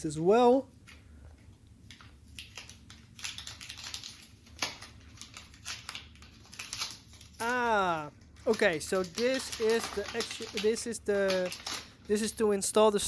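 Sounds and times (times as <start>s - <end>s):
packaging crinkling and clicking: 1.9s - 7.4s, 8.2s - 12.4s.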